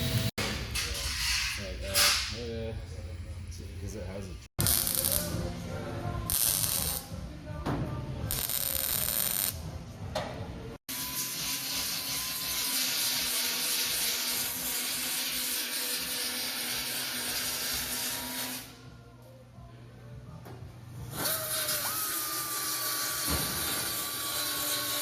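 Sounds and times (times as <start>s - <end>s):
power tool whirring: 21.2s - 25.0s.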